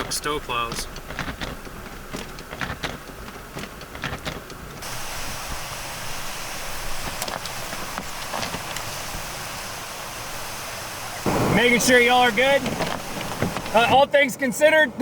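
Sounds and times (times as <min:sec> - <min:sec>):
short crackles and knocks: 0:00.0 - 0:04.8, 0:06.9 - 0:09.5, 0:11.2 - 0:13.9
blizzard wind: 0:00.0 - 0:15.0.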